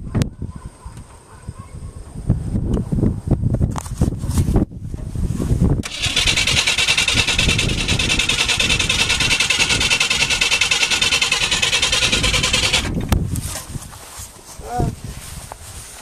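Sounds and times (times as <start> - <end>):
car engine cranking without starting: 5.8 - 13.2.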